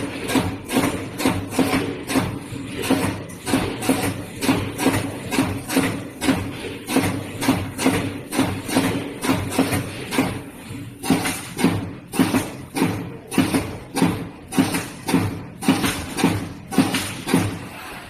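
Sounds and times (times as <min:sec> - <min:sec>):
spot welding machine clunking: 0:00.0 - 0:17.8.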